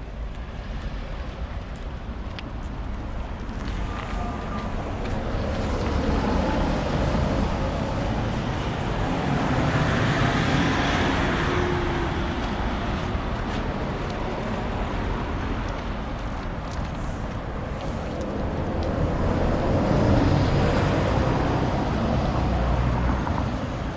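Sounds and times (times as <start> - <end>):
road traffic noise: 0.0 - 23.9
vehicle passing: 3.6 - 14.8, 18.2 - 23.9.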